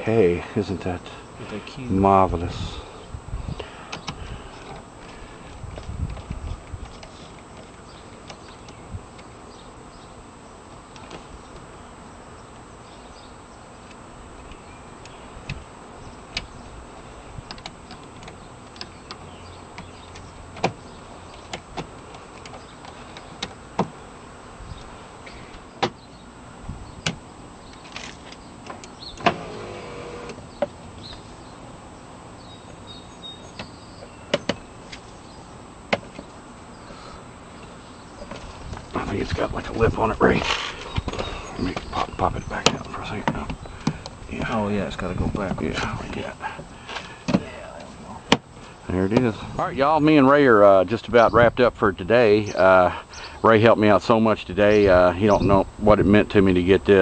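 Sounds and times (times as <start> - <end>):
small electric motor whirring: 29.1 - 30.4.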